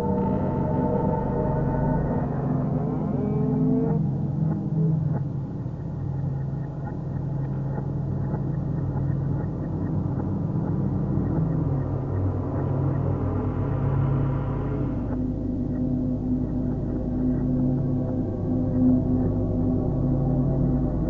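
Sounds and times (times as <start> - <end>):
low ambient drone: 0.0 - 21.0.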